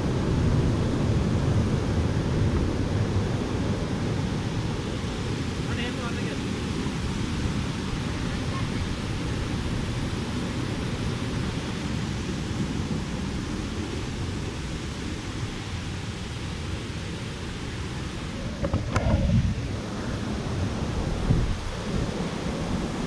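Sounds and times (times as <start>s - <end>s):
waterfall rushing: 0.0s - 12.4s
wind rumble on microphone: 0.0s - 23.0s.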